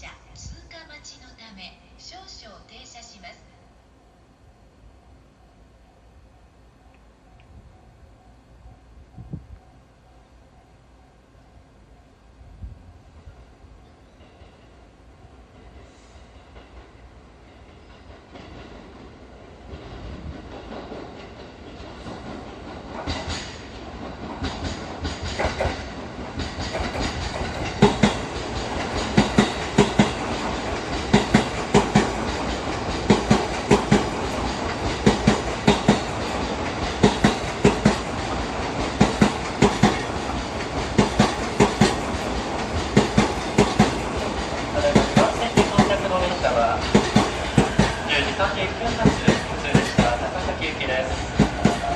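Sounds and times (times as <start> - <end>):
train passing: 0.0 - 51.9
train wheels clattering over rail joints: 15.6 - 51.9.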